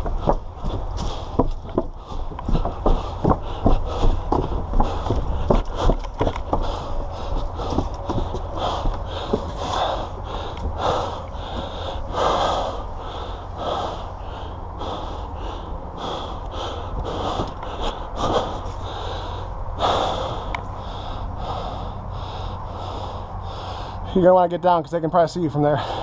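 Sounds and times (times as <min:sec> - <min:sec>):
person breathing hard: 0:00.0 - 0:24.2, 0:25.7 - 0:26.0
steady low rumble: 0:00.0 - 0:26.0.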